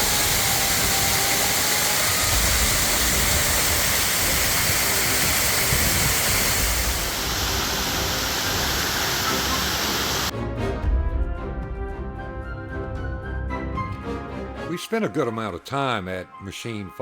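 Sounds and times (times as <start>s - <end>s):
waterfall rushing: 0.0s - 10.3s.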